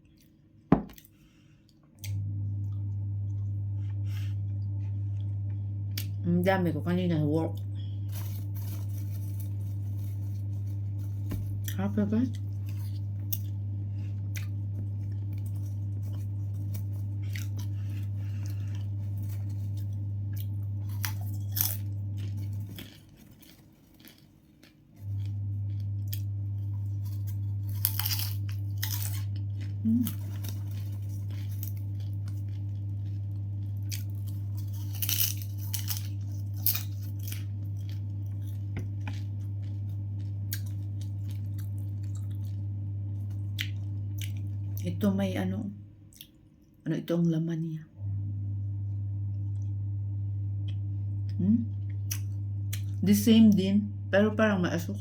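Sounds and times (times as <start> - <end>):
steady low hum: 0.0 - 55.0
person crunching and chewing: 8.0 - 42.6, 43.2 - 44.8.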